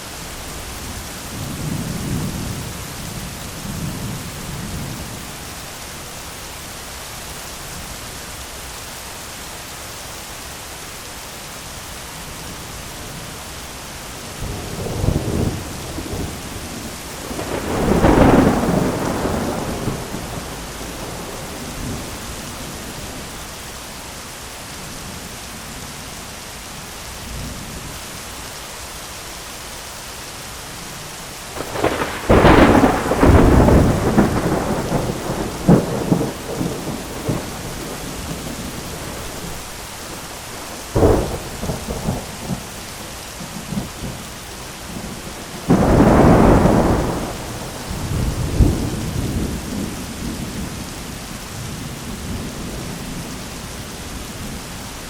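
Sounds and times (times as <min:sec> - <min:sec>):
heavy rain on an umbrella: 0:00.0 - 0:55.0
thunder: 0:14.4 - 0:22.4, 0:31.6 - 0:39.7, 0:40.5 - 0:42.8, 0:45.0 - 0:51.0.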